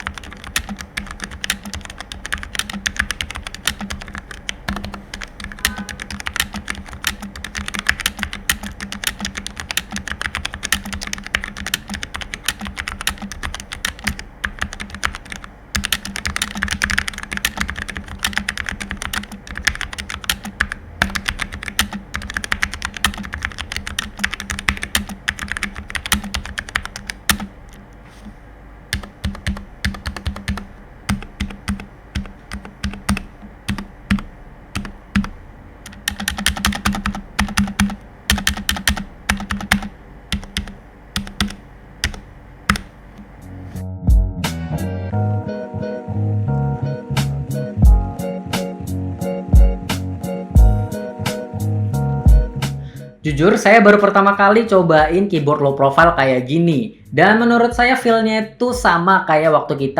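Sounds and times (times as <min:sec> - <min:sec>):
fast typing on mechanical keyboard: 0:00.0 - 0:27.8, 0:28.9 - 0:43.0.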